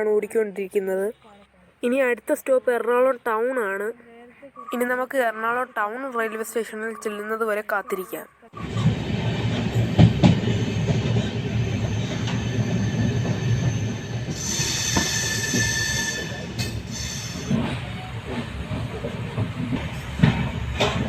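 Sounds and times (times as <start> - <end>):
train rumbling on rails: 8.6 - 21.0
high wheel squeal: 10.4 - 17.7.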